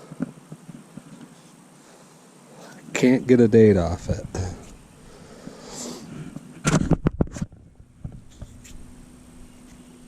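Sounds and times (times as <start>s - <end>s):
faint steady hum: 0.0s - 10.0s
sharp bumps and scrapes: 5.8s - 8.9s.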